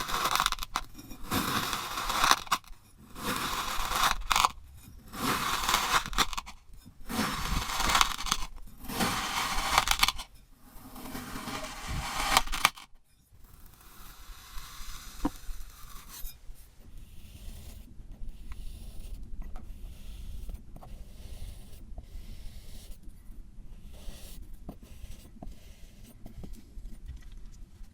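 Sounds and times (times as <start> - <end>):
kinetic sand crunching and scraping: 0.0 - 12.9.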